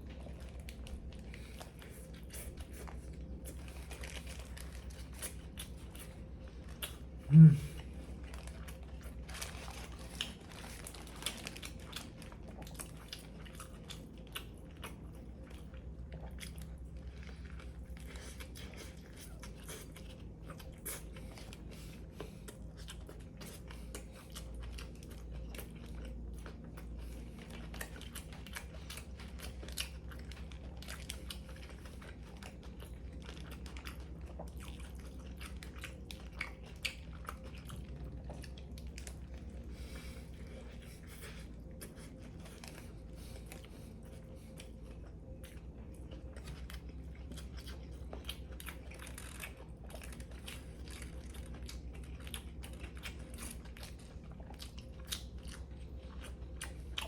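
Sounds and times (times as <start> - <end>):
crunchy chewing: 0.0 - 57.0.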